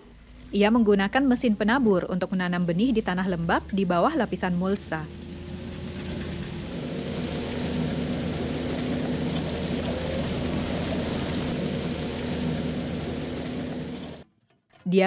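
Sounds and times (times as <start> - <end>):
tractor engine hum: 0.0 - 14.2
rushing noise: 4.3 - 14.2.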